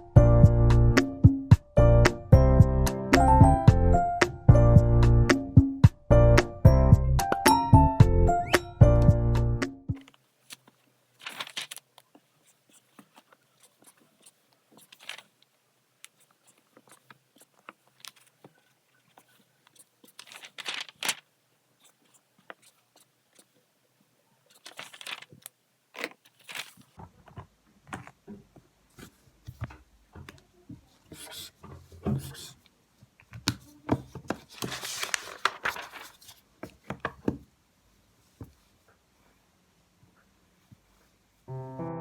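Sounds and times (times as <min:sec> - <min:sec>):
rustles and clicks: 0:10.0 - 0:22.8, 0:24.5 - 0:28.2.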